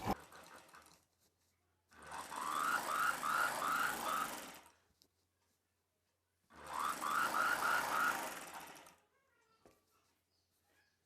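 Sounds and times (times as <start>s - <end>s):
sewing machine stitching: 0.0s - 1.1s, 1.9s - 4.8s, 6.5s - 9.0s.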